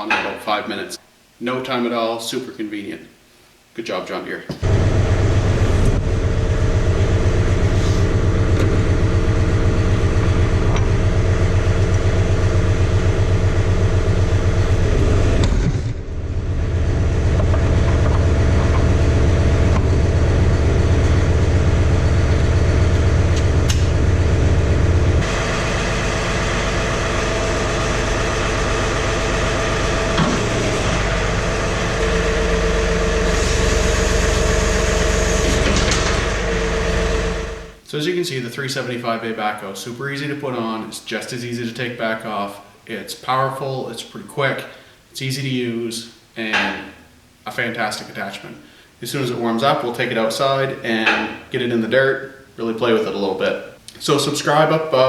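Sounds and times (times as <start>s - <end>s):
diesel tractor engine running: 4.6s - 37.8s.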